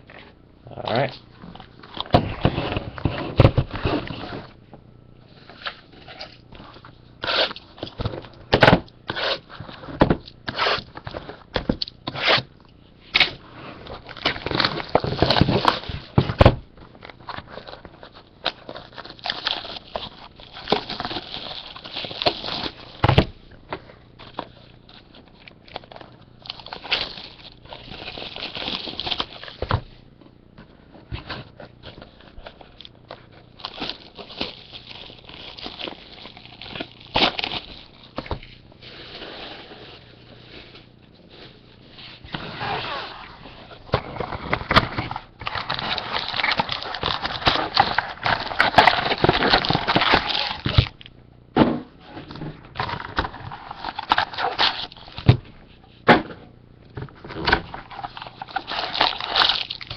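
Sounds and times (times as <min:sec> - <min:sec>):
wrappers crinkling and tearing: 0:13.9 - 0:16.2, 0:17.0 - 0:23.0, 0:24.2 - 0:29.7, 0:31.5 - 0:51.1, 0:52.8 - 0:55.3, 0:57.3 - 0:59.9.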